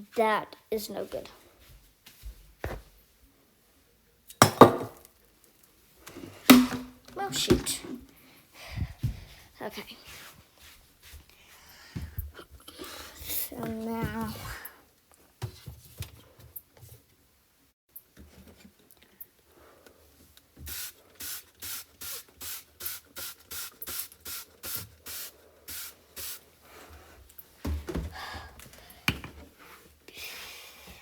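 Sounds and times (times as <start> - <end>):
knocks and handling sounds: 4.4 - 8.2, 27.0 - 30.0
spray bottle squirting: 20.7 - 26.4.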